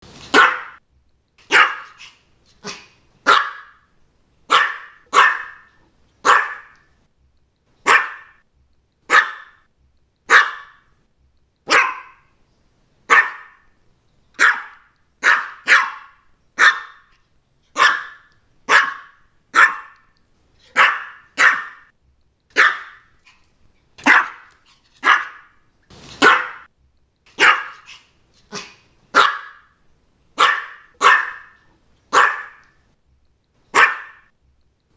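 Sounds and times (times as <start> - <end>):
small dog barking: 0.3 - 0.8, 1.4 - 3.9, 4.5 - 6.9, 7.8 - 8.4, 9.1 - 9.7, 10.3 - 10.9, 11.7 - 12.3, 13.1 - 13.8, 14.4 - 21.9, 22.5 - 23.2, 24.0 - 25.6, 26.2 - 26.7, 27.3 - 29.8, 30.4 - 32.8, 33.7 - 34.3.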